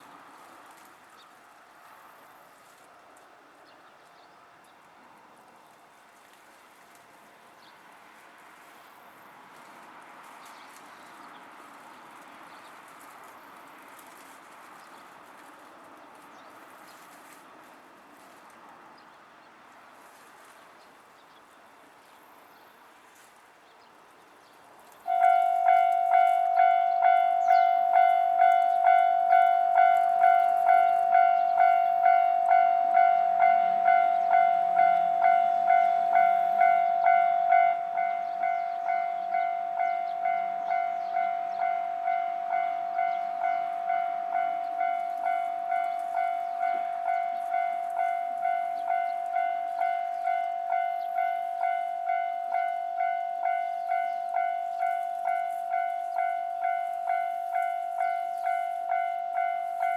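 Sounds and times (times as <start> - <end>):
level crossing warning bell: 25.0 - 59.9.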